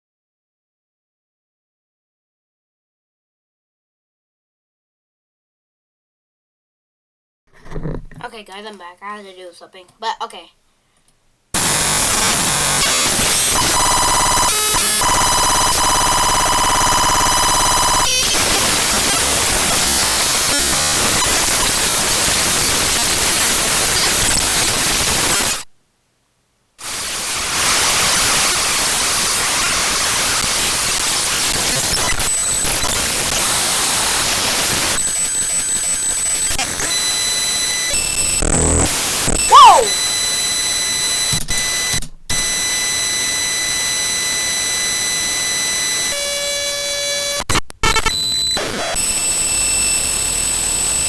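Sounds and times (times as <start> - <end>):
harsh digital static: 11.6 - 25.7, 26.8 - 39.5, 44.0 - 51.0.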